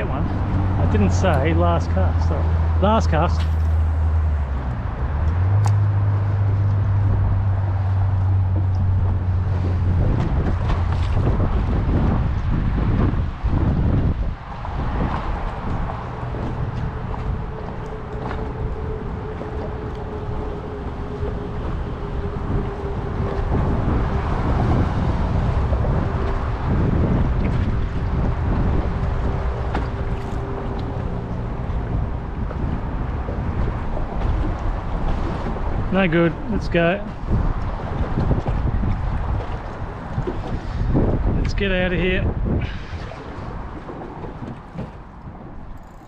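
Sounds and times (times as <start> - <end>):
outboard motor running: 0.0 - 46.0
wind on microphone: 0.0 - 46.0
steady low hum: 14.6 - 37.9.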